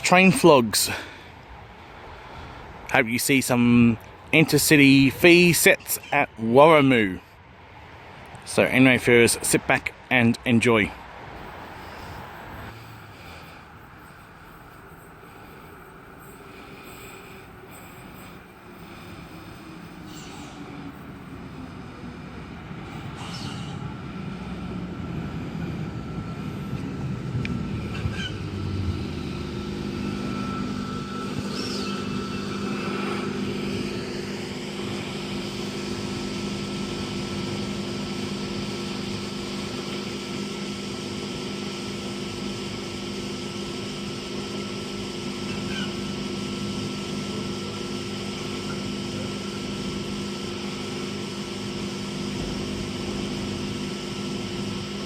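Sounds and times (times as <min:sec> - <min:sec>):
faint high whine: 0:08.0 - 0:55.0
train low rumble: 0:10.9 - 0:55.0
train equipment hum: 0:11.0 - 0:55.0.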